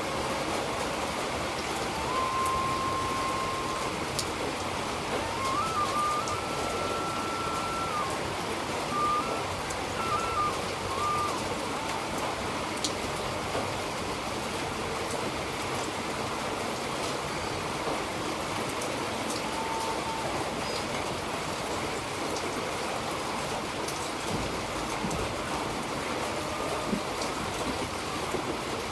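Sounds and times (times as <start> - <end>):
rushing water: 0.0 - 28.9
faint melody of held notes: 1.7 - 12.7.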